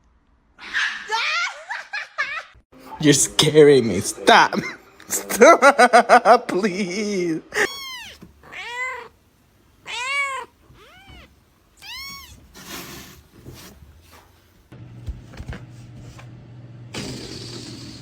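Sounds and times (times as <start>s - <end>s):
cat meowing: 7.6s - 9.2s, 9.8s - 12.7s.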